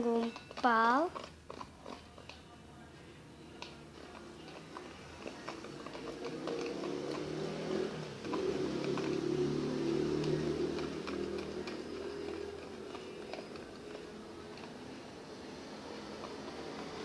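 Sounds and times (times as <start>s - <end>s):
slime squelching while stirred: 0.0s - 17.0s.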